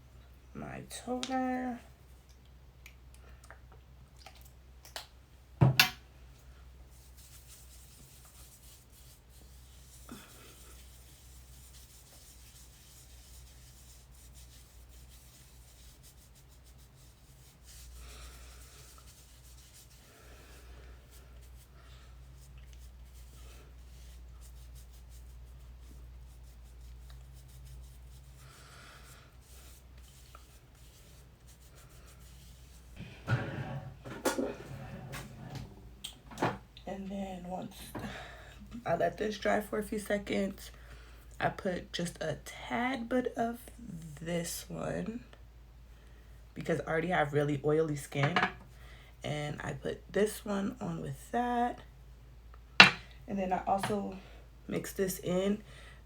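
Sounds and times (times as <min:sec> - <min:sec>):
pad rubbing on skin: 0:06.9 - 0:33.4.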